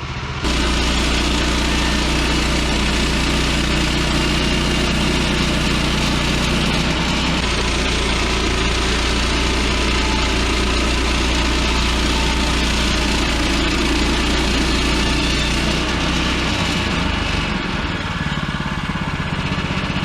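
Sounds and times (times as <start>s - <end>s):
sawmill gas engine running: 0.1s - 20.0s.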